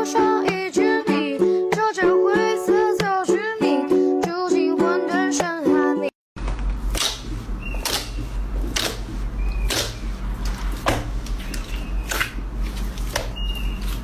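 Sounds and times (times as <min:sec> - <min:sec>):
slime squelching: 0:06.8 - 0:14.0.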